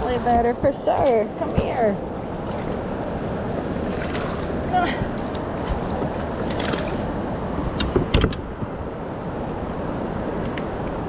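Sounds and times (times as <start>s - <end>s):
water noise: 0.0s - 11.0s
wind: 0.0s - 11.0s
knocks or splashes: 3.9s - 7.0s.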